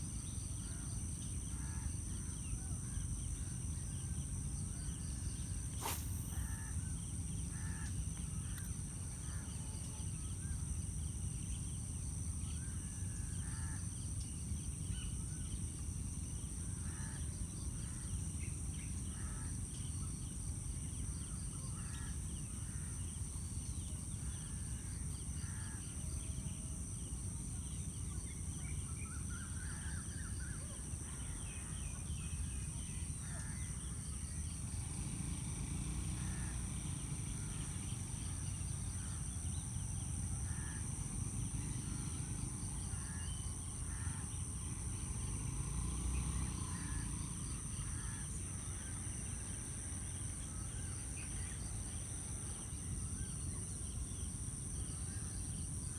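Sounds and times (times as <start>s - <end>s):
high-pitched insect drone: 5.8s - 6.8s.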